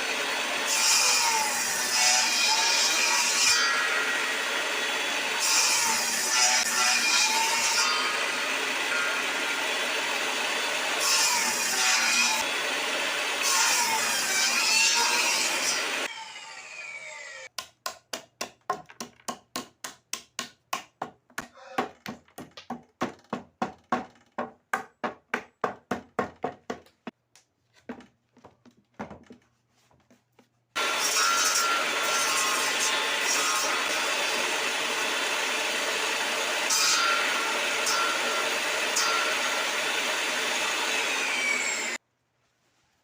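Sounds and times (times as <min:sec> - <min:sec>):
woodworking machine running: 0:00.0 - 0:00.8, 0:08.2 - 0:11.2, 0:11.8 - 0:13.6, 0:30.8 - 0:42.0
power tool winding down: 0:15.5 - 0:17.5.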